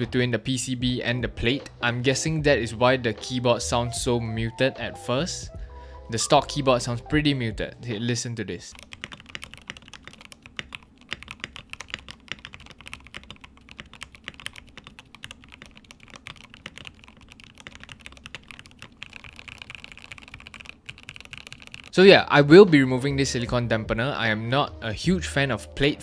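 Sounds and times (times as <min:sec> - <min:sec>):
typing on mechanical keyboard: 0:08.7 - 0:22.0.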